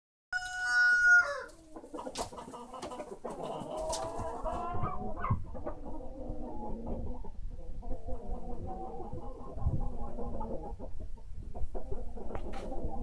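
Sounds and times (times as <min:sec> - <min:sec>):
rooster crowing: 0:00.3 - 0:01.5
chickens clucking: 0:00.4 - 0:13.0.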